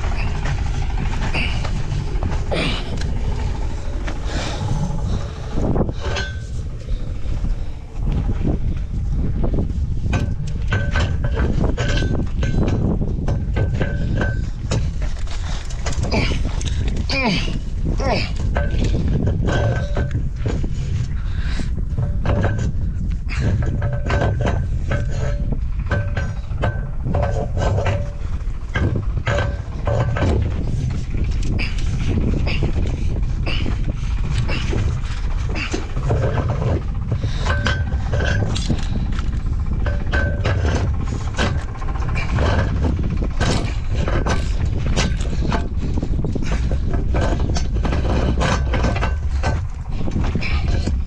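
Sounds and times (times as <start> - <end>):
wind noise on microphone: 0.0 - 51.0
metallic clanks of tools: 23.3 - 45.7.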